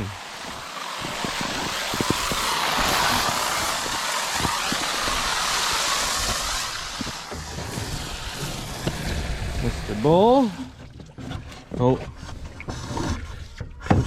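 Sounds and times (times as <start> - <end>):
water rushing from a pipe: 0.0 - 14.0.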